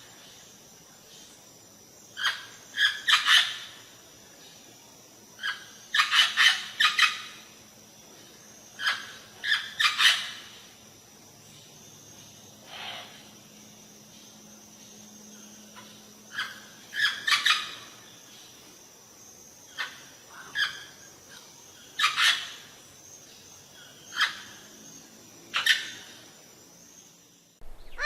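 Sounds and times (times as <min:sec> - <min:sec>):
parrot squawking: 0:27.8 - 0:28.0.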